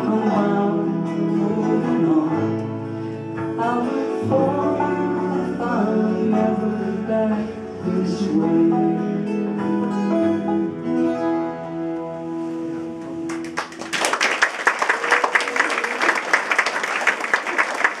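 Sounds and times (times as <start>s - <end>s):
audience applause: 13.3s - 18.0s.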